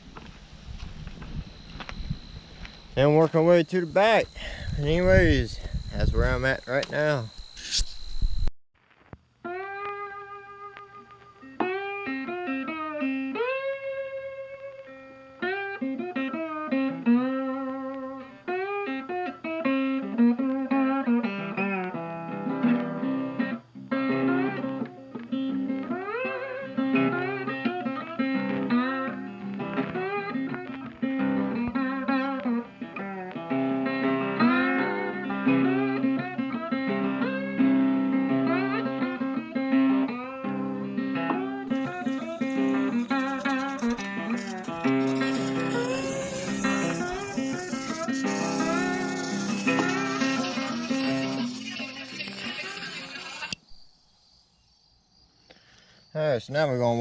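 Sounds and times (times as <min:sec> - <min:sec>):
blues guitar lead: 0:09.4 - 0:53.6.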